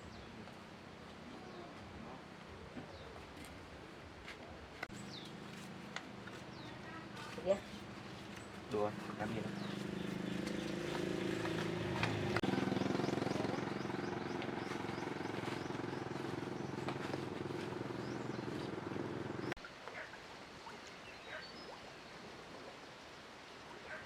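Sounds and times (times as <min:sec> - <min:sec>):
faint outdoor clicks: 0:04.3 - 0:07.0, 0:09.7 - 0:12.5, 0:14.2 - 0:15.6
engine humming: 0:04.8 - 0:19.6
birds chirping: 0:04.9 - 0:24.0.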